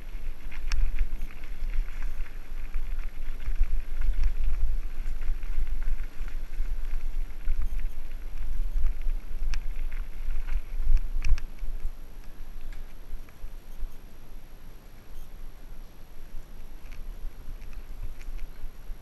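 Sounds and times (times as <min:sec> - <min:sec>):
sharp clicks over bumps: 0:00.0 - 0:13.9, 0:16.6 - 0:18.9
bike chain and frame rattle: 0:00.0 - 0:14.0
wind buffeting microphone: 0:00.0 - 0:14.0.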